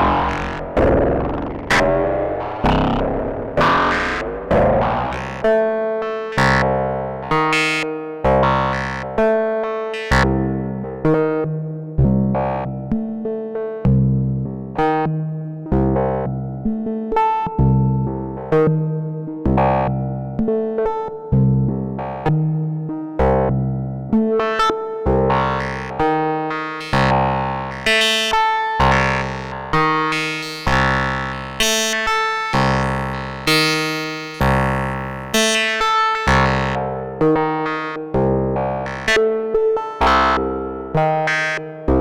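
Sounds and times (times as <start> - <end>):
synthesizer sequenced notes: 0.0 - 7.8, 25.2 - 42.0.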